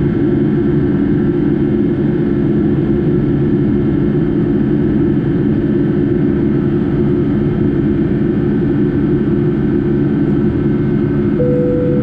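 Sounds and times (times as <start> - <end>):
jet engine drone in cabin: 0.0 - 12.0
short steady tone: 11.4 - 12.0.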